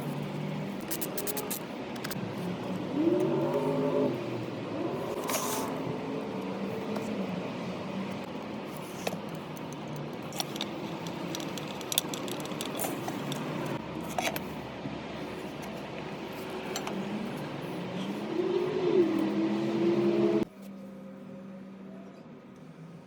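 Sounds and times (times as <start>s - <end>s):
metal parts and tools clinking: 8.7s - 14.5s.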